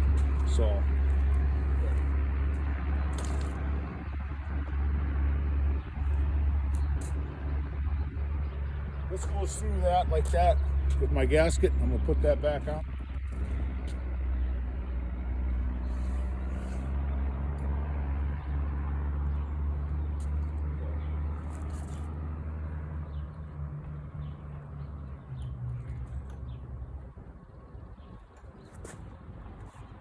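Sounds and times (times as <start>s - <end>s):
low motor hum: 0.0s - 30.0s.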